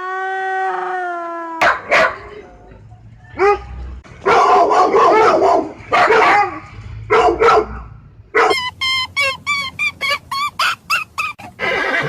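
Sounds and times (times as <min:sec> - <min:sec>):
dog barking: 0:01.6 - 0:02.4, 0:03.3 - 0:08.7
horse whinnying: 0:11.4 - 0:12.0.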